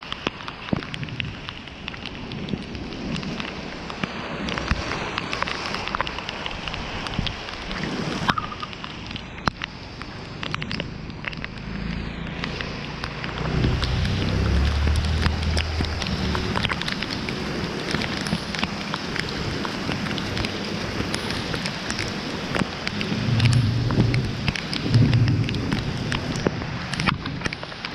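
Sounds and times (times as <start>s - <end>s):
rain falling: 0.0s - 27.9s
raindrops ticking: 0.0s - 27.9s
low rumble: 10.5s - 26.9s.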